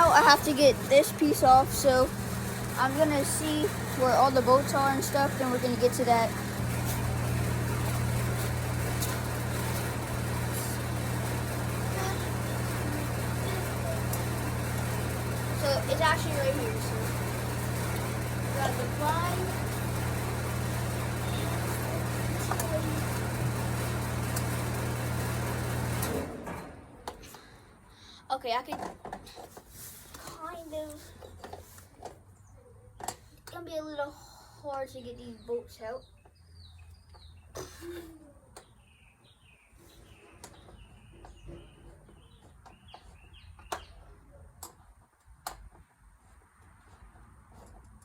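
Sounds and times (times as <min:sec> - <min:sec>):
birds chirping: 0:00.0 - 0:23.0, 0:34.9 - 0:37.6, 0:38.5 - 0:44.2
air conditioner humming: 0:00.0 - 0:28.6.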